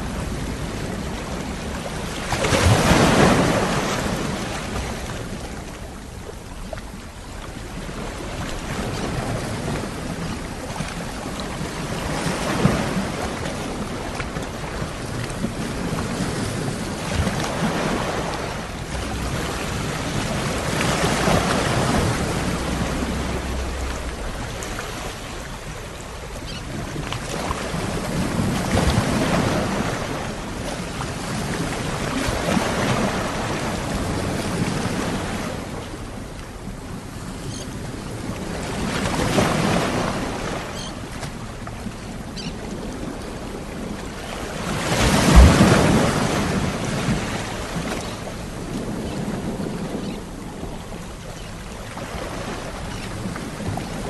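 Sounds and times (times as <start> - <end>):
sea waves washing onto shore: 0.0 - 54.0
wave low thump: 18.8 - 25.9.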